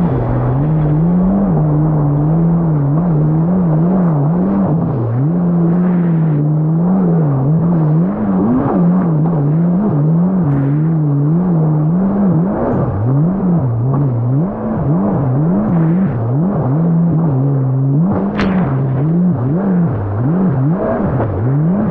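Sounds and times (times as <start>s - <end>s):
rush of wind and water: 0.0s - 7.1s
jet ski engine revving: 0.0s - 21.9s.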